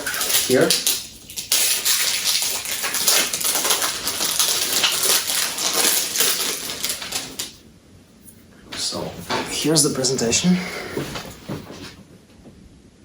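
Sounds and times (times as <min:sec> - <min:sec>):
cellophane crinkling: 0:00.0 - 0:07.6.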